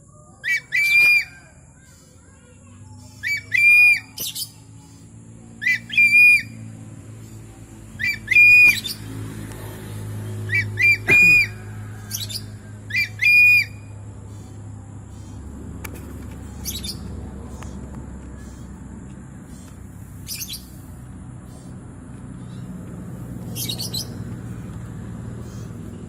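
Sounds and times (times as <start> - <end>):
hawk-eagle calling: 10.5 - 18.8.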